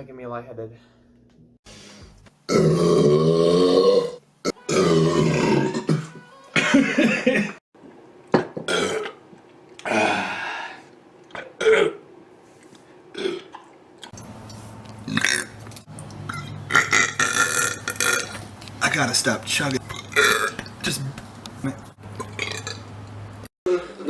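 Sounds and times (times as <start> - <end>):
man burping: 2.5 - 6.1, 8.7 - 9.2, 9.8 - 10.4, 11.3 - 12.0, 13.2 - 13.6, 19.9 - 20.6.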